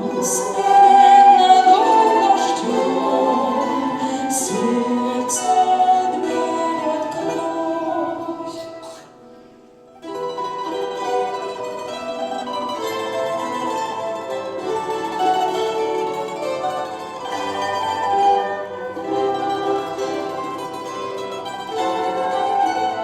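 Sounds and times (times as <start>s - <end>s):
person singing: 0.0s - 9.2s, 17.3s - 21.0s
plucked strings: 0.0s - 23.0s.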